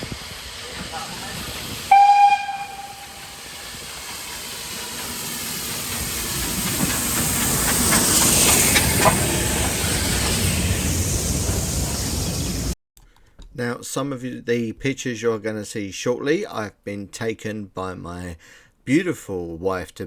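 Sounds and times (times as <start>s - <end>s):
steam train whistle: 0.0s - 4.7s
steam hiss and train noise: 0.0s - 12.8s.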